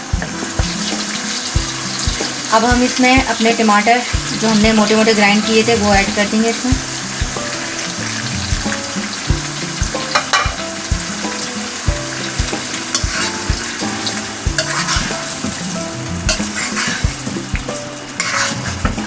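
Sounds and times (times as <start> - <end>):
food sizzling in hot oil: 0.0 - 19.0
spoon stirring: 12.2 - 19.0.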